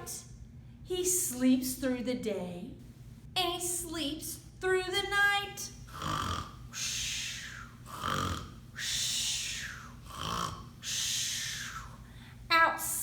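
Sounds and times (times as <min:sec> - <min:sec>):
woman imitating snoring: 0:05.9 - 0:12.0
breathy hiss: 0:05.9 - 0:12.5.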